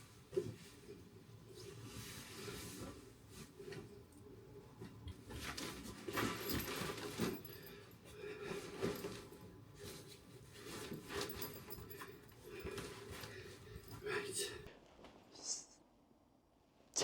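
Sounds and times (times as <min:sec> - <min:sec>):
rustling of belongings: 0:04.8 - 0:15.3
light clinks of objects: 0:04.9 - 0:14.7.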